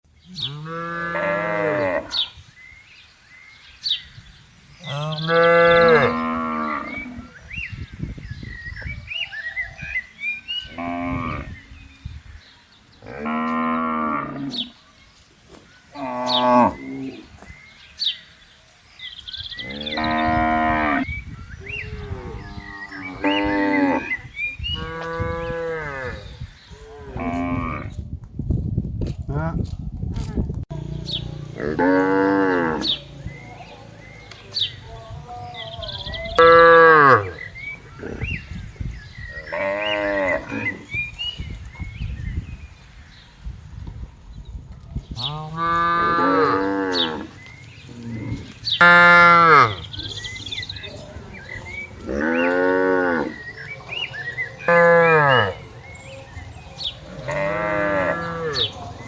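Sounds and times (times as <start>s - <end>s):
cattle mooing: 57.1s - 58.7s.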